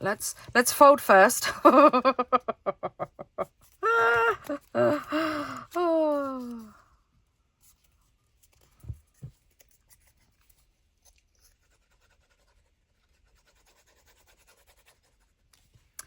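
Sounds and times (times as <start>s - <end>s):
paper rustling: 7.6s - 11.2s.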